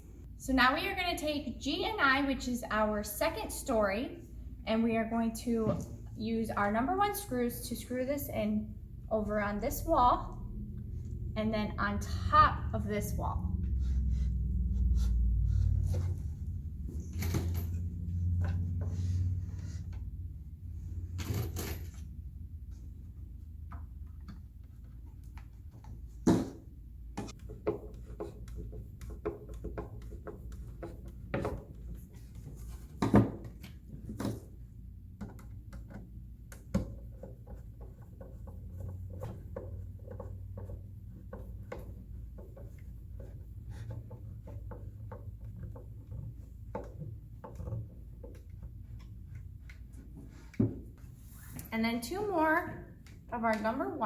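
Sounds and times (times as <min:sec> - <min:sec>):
low steady hum: 0:00.0 - 0:54.0.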